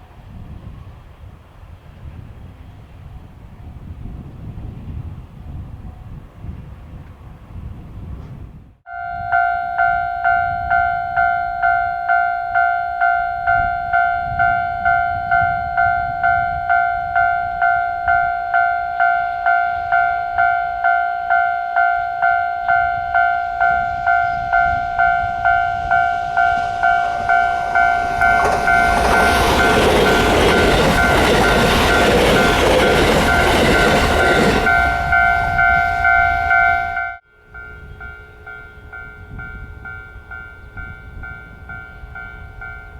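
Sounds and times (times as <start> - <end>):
train passing: 0.0 - 42.9
level-crossing warning bell: 8.9 - 42.9.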